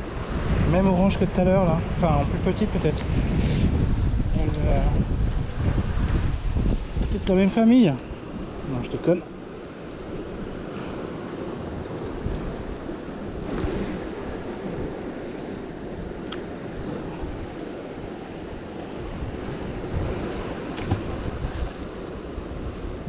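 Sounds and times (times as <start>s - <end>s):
sea washing: 0.0s - 23.0s
wind buffeting microphone: 0.0s - 23.0s.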